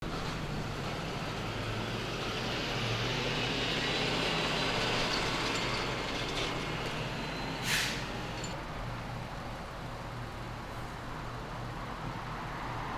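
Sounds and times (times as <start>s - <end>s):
short sharp hiss: 7.6s - 8.1s.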